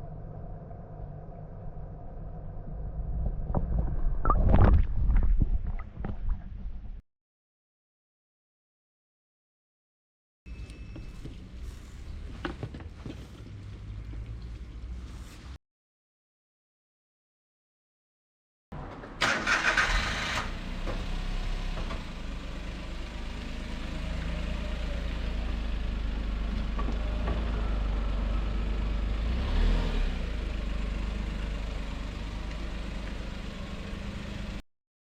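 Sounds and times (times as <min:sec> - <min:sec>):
engine starting and idling: 0:19.2 - 0:24.5.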